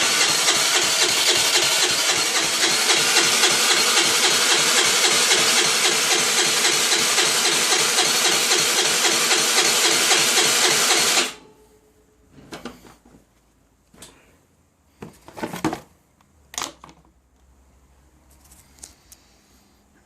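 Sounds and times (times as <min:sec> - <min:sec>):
scooter engine turning over: 0:00.0 - 0:11.4.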